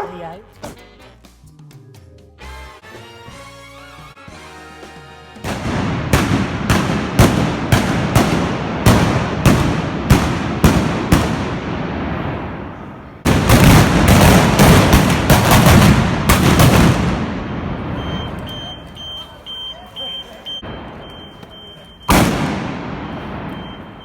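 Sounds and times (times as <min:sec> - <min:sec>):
blunderbuss blasts echoing: 0:05.4 - 0:19.0, 0:20.6 - 0:24.0.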